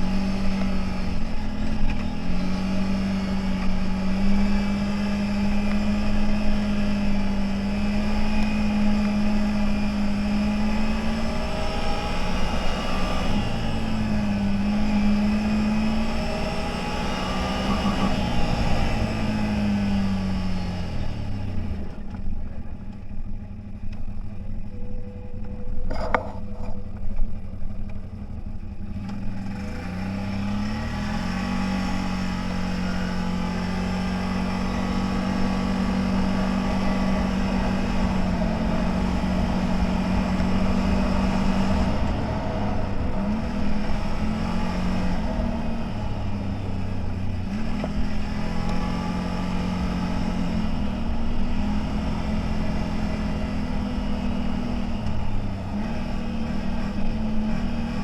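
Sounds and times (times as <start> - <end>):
off-road vehicle engine revving: 0.0 - 58.0.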